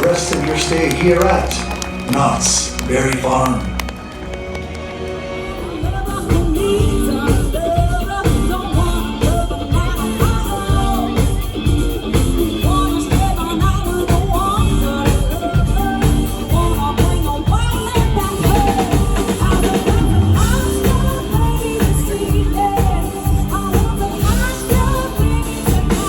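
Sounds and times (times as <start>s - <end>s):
pop-rock song: 5.4s - 26.0s.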